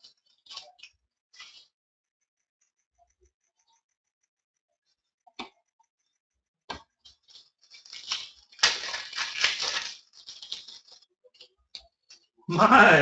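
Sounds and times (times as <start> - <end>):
card packaging crinkling: 7.7 - 11.0.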